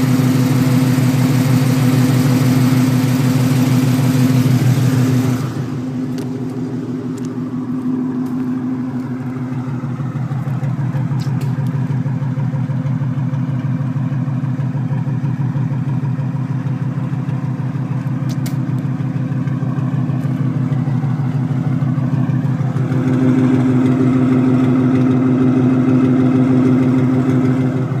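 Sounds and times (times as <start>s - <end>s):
vehicle engine with pulsing exhaust: 0.0s - 28.0s.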